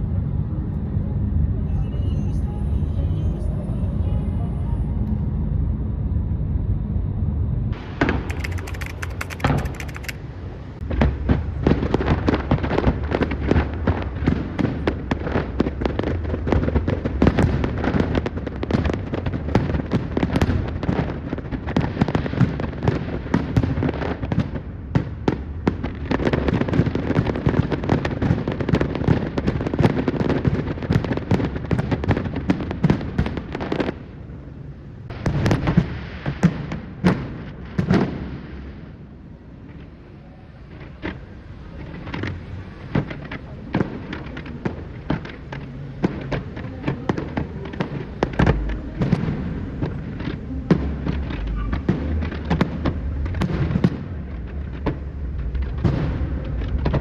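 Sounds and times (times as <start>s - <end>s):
fireworks bursting: 7.7s - 57.0s
fireworks crackling: 7.7s - 57.0s.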